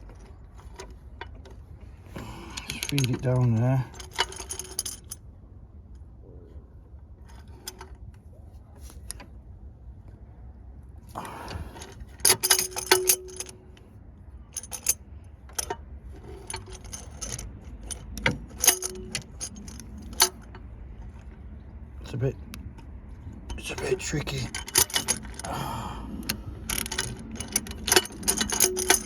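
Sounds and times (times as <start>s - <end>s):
metal tool clinking on engine parts: 2.5s - 5.2s, 11.8s - 13.7s, 14.6s - 20.5s, 23.4s - 25.5s, 26.2s - 29.0s.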